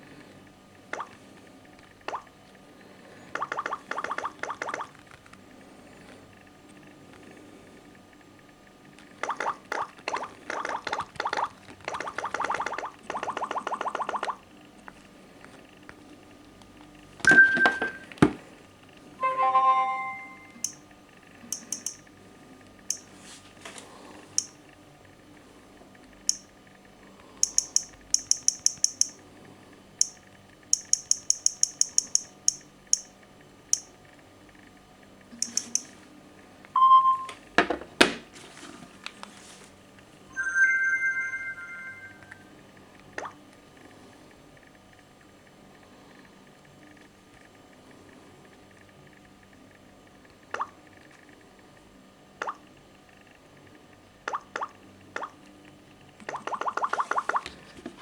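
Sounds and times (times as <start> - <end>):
short electronic tones: 19.2 - 20.8, 40.3 - 42.4
phone touch-tap clicks: 21.5 - 22.0, 35.4 - 35.9.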